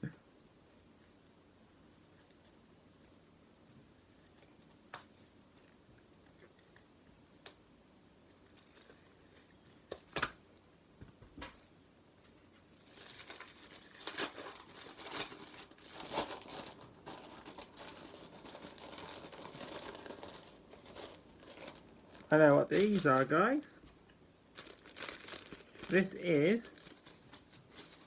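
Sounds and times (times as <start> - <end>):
packaging crinkling and rustling: 8.3 - 10.4, 12.6 - 28.0.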